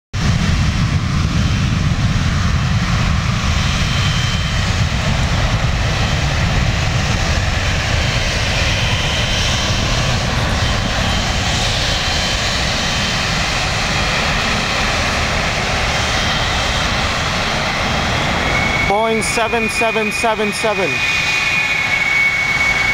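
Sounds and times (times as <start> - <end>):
jet engines low rumble: 0.1 - 22.9
high-pitched engine tones: 7.8 - 22.9.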